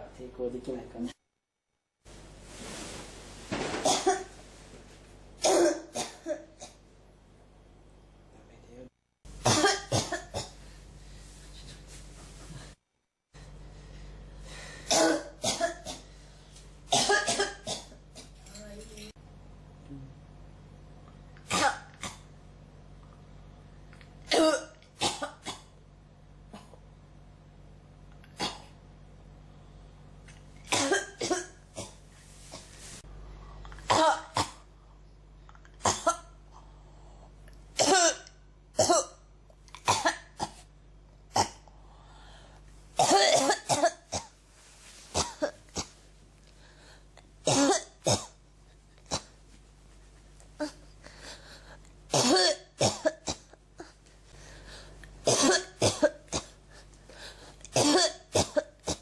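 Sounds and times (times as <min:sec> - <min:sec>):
faint low hum: 0:02.1 - 0:59.0
person coughing: 0:03.8 - 0:04.3, 0:05.4 - 0:06.8, 0:09.4 - 0:10.6, 0:14.9 - 0:16.1, 0:16.9 - 0:18.6, 0:21.4 - 0:22.3, 0:24.2 - 0:25.7, 0:28.3 - 0:28.8, 0:30.7 - 0:32.0, 0:33.9 - 0:34.6, 0:35.8 - 0:36.4, 0:37.8 - 0:39.2, 0:43.0 - 0:44.3, 0:45.1 - 0:46.0, 0:47.4 - 0:48.4, 0:52.1 - 0:54.0, 0:55.2 - 0:56.8, 0:57.7 - 0:59.0.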